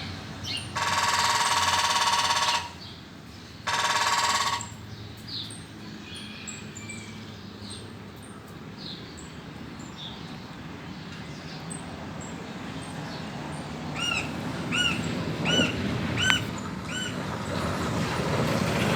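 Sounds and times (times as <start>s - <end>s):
woodpecker calling: 0.0s - 7.2s, 13.6s - 17.4s
low traffic rumble: 0.0s - 18.9s.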